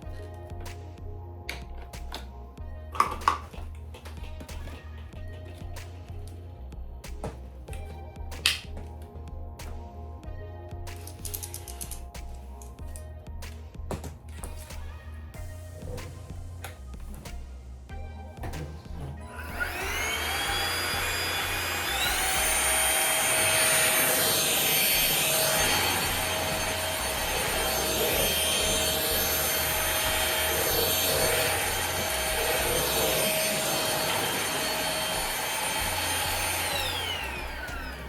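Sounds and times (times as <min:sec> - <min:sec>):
vacuum cleaner motor whine: 0:17.9 - 0:38.0.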